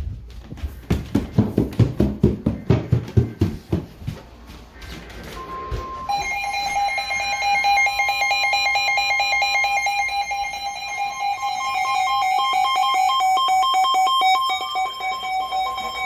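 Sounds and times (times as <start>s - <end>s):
steady single alarm tone: 5.3s - 16.0s.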